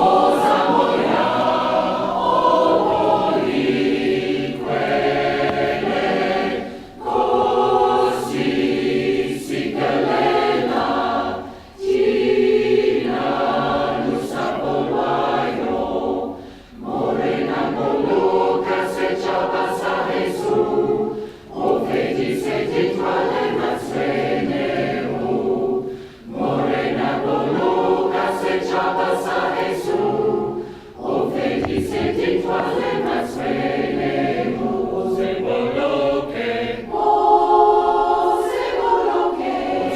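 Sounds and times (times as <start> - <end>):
choir singing in harmony: 0.0 - 39.9.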